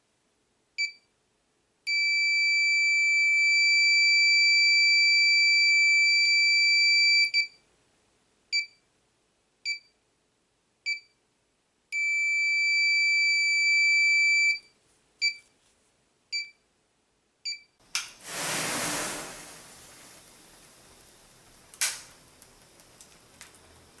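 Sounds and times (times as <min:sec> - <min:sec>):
heartbeat monitor beeps: 0:01.9 - 0:07.6, 0:08.5 - 0:08.8, 0:09.7 - 0:10.0, 0:10.9 - 0:11.2, 0:12.0 - 0:15.4, 0:16.3 - 0:16.6, 0:17.5 - 0:17.8
click: 0:17.9 - 0:18.2
burst of rushing noise: 0:18.2 - 0:20.9.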